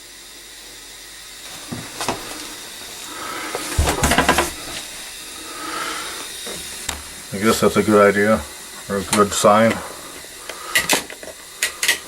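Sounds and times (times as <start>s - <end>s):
heating element sizzling: 0.0s - 12.0s
sharp clicks and knocks: 3.5s - 4.9s.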